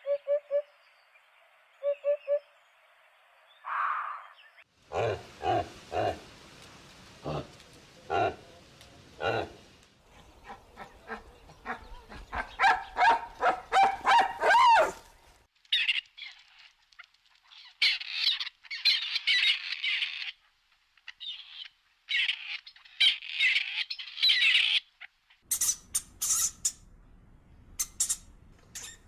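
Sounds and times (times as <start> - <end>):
high chirping in bursts: 25.4 - 26.9, 27.7 - 29.0
sharp high squeaks: 25.5 - 26.8, 27.8 - 29.0.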